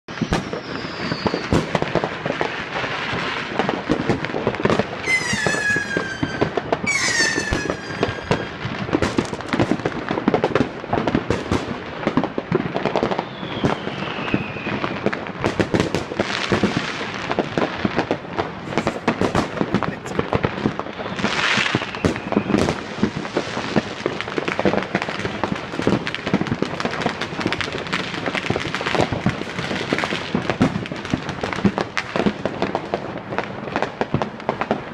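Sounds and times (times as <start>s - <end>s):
firework falling whistles: 0.1s - 3.8s, 4.6s - 9.9s, 12.5s - 26.4s
fireworks bangs and crackling pops: 0.1s - 34.9s.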